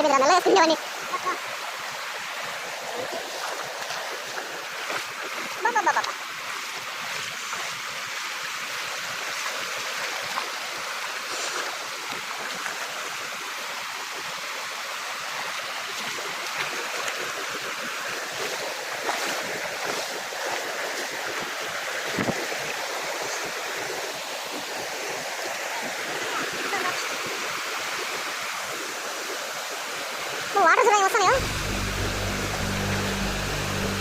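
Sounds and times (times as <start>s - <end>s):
waterfall rushing: 29.7s - 34.0s.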